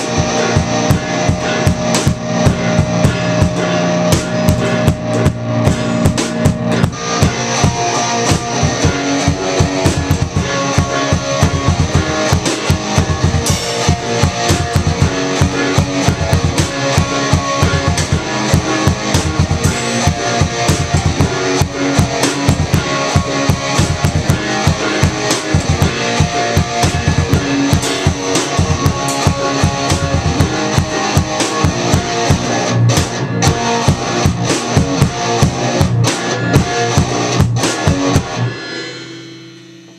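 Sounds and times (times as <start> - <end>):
band music with drums and guitar: 0.0 - 39.9.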